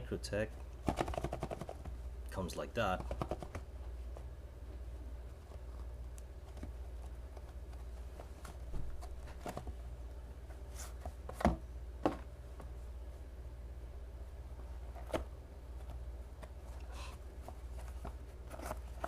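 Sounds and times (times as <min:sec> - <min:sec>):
steady low hum: 0:00.0 - 0:19.0
cardboard box taps and knocks: 0:11.3 - 0:12.3.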